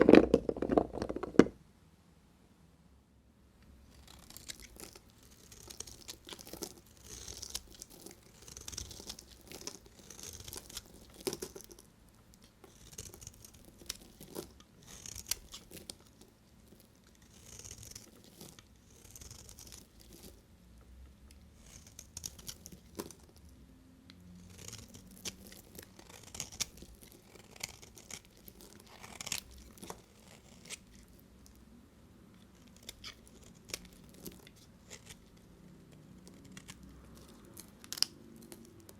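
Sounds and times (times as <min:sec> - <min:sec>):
knife cutting bar soap: 0:03.9 - 0:11.8, 0:12.7 - 0:20.4, 0:24.5 - 0:31.6.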